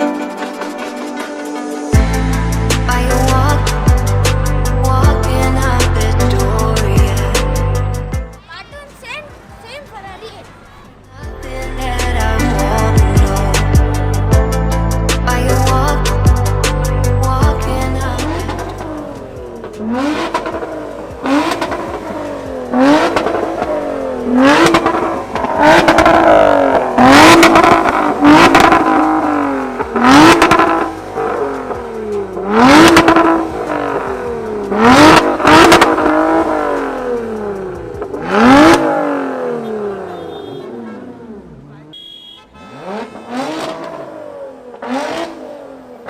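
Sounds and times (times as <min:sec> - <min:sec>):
car engine revving: 0:10.4 - 0:46.0
exhaust cracks: 0:18.0 - 0:45.9.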